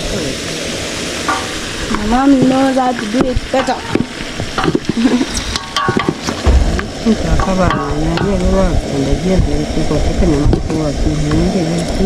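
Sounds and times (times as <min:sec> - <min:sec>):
food sizzling in a pan: 0:00.0 - 0:10.6
spoon scraping a pan: 0:01.3 - 0:06.4.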